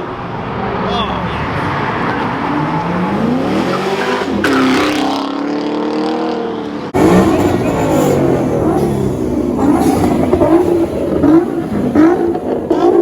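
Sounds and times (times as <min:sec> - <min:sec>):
car engine revving: 0:00.3 - 0:13.0.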